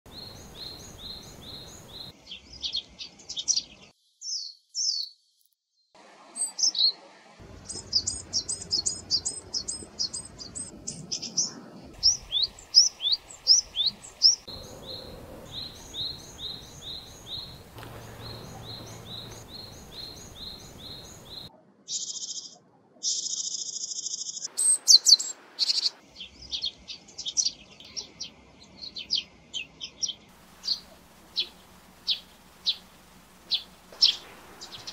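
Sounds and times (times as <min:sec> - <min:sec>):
steady buzzy hiss: 0:00.1 - 0:02.2, 0:11.9 - 0:21.5, 0:30.3 - 0:34.9
small songbirds chirping and trilling: 0:00.1 - 0:34.9.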